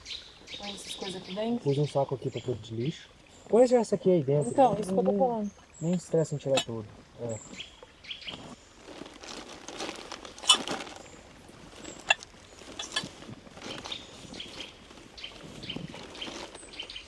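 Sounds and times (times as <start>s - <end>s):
bird chirps: 0.0s - 3.0s
rustling of packing a bag: 8.3s - 17.0s.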